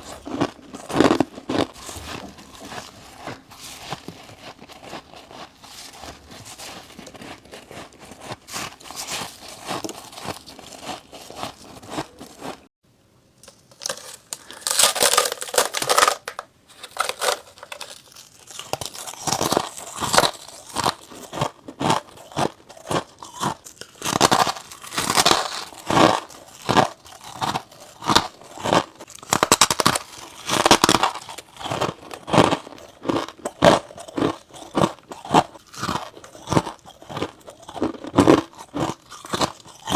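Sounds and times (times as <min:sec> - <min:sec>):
crunching frost with teeth: 0:00.0 - 0:12.7, 0:13.4 - 0:39.9.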